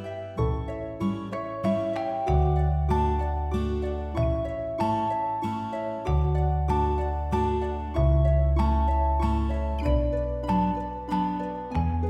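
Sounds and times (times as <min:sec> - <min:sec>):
gentle plucked notes: 0:00.0 - 0:12.0
sustained low bass: 0:06.1 - 0:12.0.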